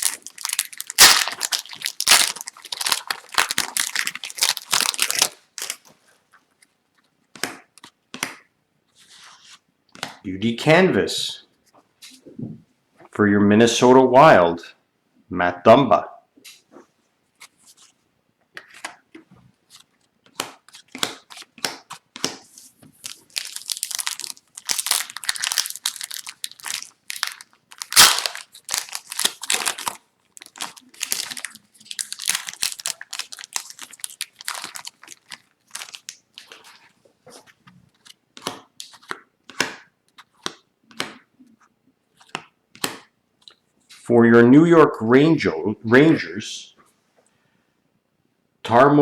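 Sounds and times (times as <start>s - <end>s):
plastic wrapper crinkling and tearing: 0.0s - 5.9s, 22.9s - 36.9s.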